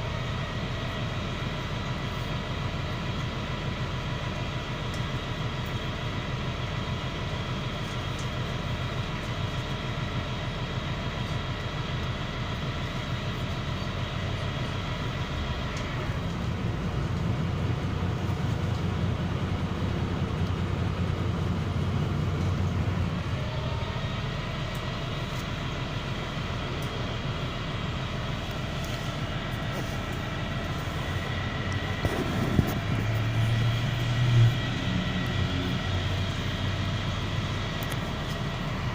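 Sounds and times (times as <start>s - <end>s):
bus engine and road rumble: 0.0s - 38.9s
whining tones: 28.5s - 38.6s.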